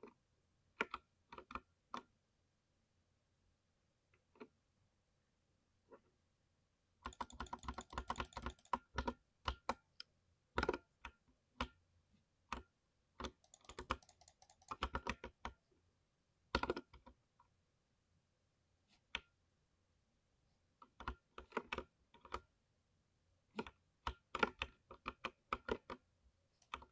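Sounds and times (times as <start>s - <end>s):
mechanical keyboard typing: 7.0s - 9.8s, 13.2s - 15.6s, 26.6s - 26.9s.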